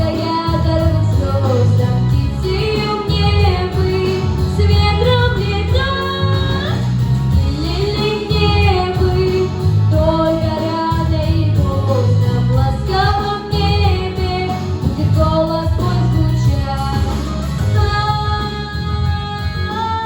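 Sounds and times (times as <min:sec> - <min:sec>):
instrumental backing track: 0:00.0 - 0:20.0
woman singing: 0:00.0 - 0:20.0.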